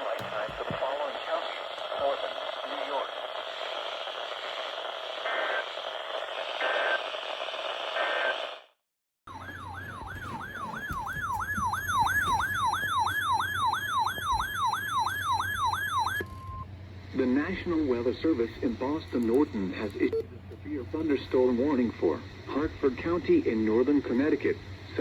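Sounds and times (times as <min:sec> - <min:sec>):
radio static crackle: 0:00.0 - 0:08.7, 0:09.4 - 0:16.2, 0:17.6 - 0:25.0
alert siren wailing: 0:09.3 - 0:16.6.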